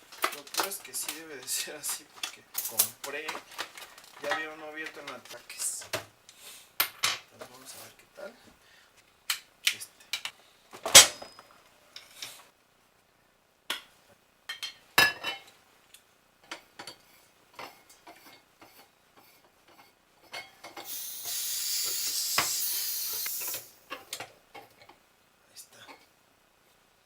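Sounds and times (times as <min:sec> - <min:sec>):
blowtorch parts clicking and knocking: 0:20.4 - 0:24.3
gas hissing from blowtorch: 0:20.8 - 0:24.0.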